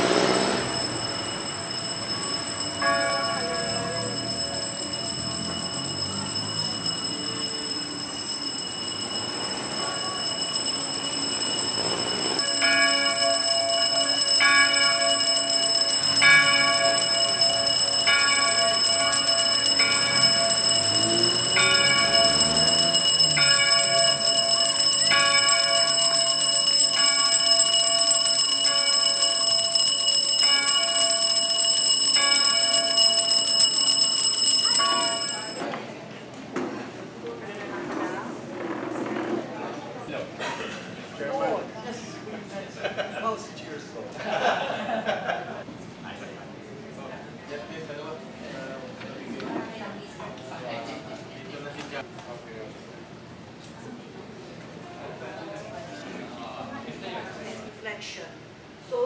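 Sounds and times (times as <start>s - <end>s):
church bells ringing: 0.0s - 35.6s.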